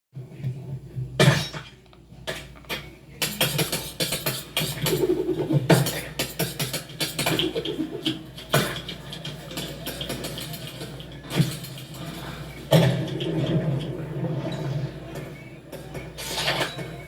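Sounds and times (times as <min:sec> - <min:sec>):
dishes crashing: 0:01.2 - 0:02.4
dishes and cutlery clattering: 0:01.2 - 0:17.0.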